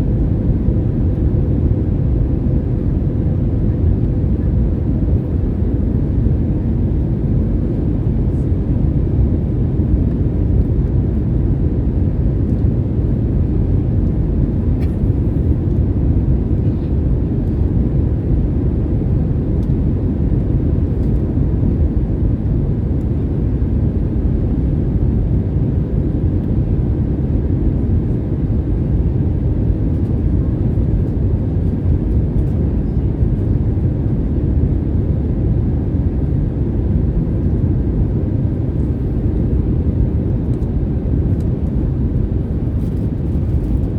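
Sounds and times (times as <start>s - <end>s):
aircraft cabin rumble: 0.0s - 43.9s.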